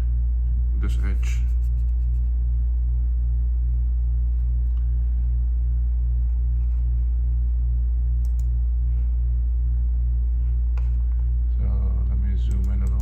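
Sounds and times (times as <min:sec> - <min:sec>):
low electrical hum: 0:00.0 - 0:13.0
faint light clicks: 0:08.2 - 0:08.5.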